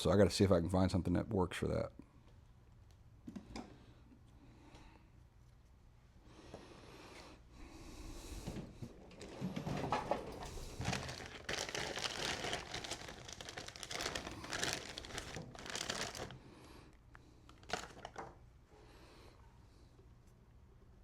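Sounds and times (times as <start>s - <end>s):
plastic packaging crinkling: 10.2s - 16.5s, 17.5s - 18.4s.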